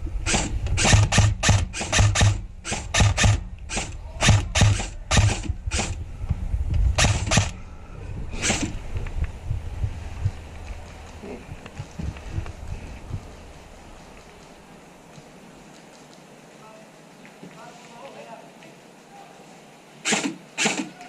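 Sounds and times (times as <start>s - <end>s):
airsoft rifle shots: 0.2s - 6.0s, 7.0s - 7.6s, 8.4s - 8.8s, 20.0s - 21.0s.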